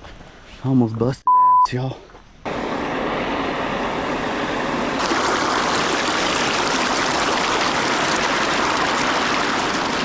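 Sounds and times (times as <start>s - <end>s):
stream water rushing: 4.9s - 10.0s.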